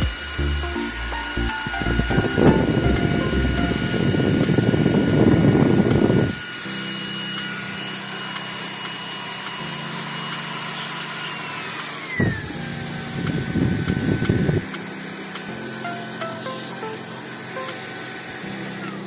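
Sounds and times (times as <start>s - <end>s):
vacuum cleaner motor whine: 2.2s - 14.6s.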